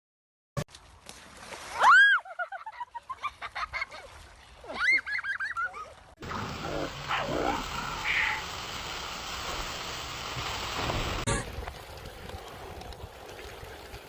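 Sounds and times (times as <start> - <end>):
high rising and falling animal call: 6.2 - 8.6.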